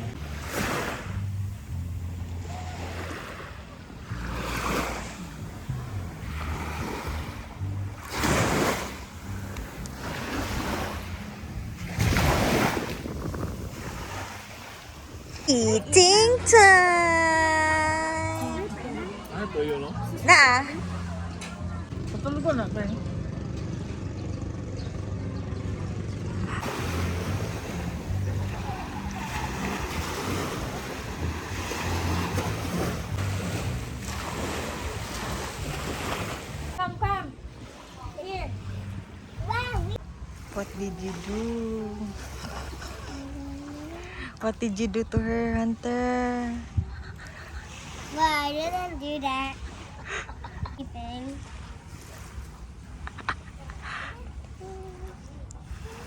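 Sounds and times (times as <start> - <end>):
waves breaking on a beach: 2.4 - 17.4, 26.6 - 44.4, 45.8 - 56.0
wind rumble on microphone: 5.2 - 15.6, 44.7 - 47.7
wind buffeting microphone: 9.0 - 16.6, 44.7 - 53.0
ocean surf washing on beach: 26.6 - 36.8.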